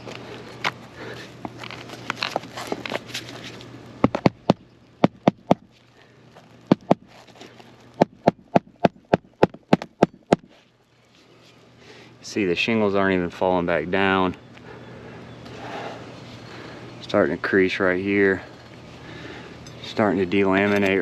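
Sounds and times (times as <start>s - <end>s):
roof shingles rustling and scraping: 0.0s - 4.0s, 5.7s - 8.0s
hammer striking nails: 6.7s - 7.0s, 8.0s - 10.5s.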